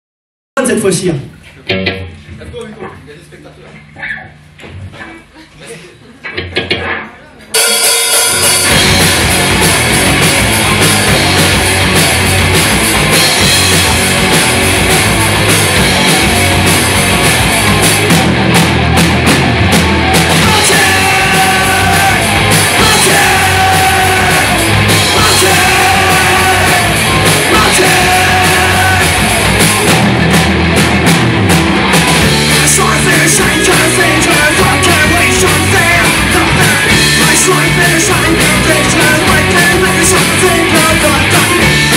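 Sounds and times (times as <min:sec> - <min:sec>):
punk rock band playing: 0:01.7 - 0:02.5, 0:06.4 - 0:41.9
singer yelling: 0:20.2 - 0:29.5.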